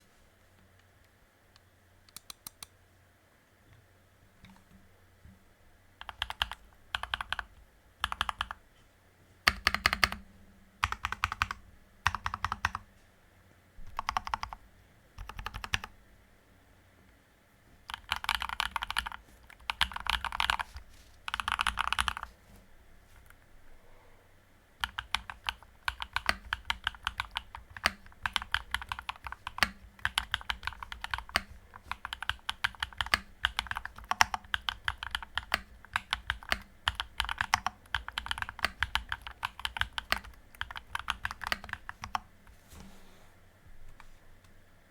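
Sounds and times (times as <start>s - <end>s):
mechanical keyboard typing: 6.0s - 8.6s, 9.5s - 10.2s, 10.8s - 12.8s, 13.8s - 14.6s, 15.2s - 15.9s, 17.8s - 22.3s, 24.8s - 42.3s.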